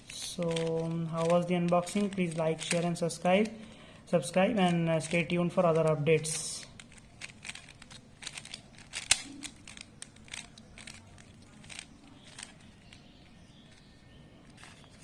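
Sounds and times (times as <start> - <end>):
light rustling: 0.0 - 3.8
small handling clicks: 0.0 - 15.0.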